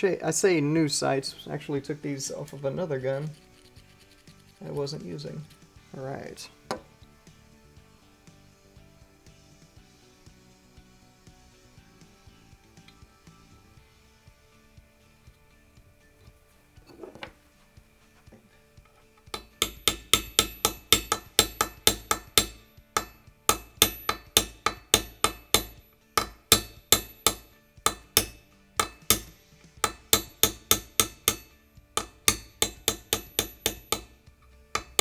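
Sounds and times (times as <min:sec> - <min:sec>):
hammer tapping metal punch: 0:18.2 - 0:34.2, 0:34.8 - 0:35.0.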